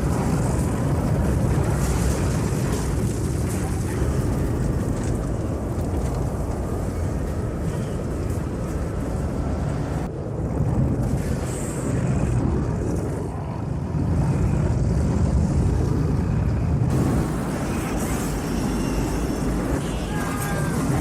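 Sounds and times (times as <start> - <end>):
roaring tornado wind rumble: 0.0 - 21.0.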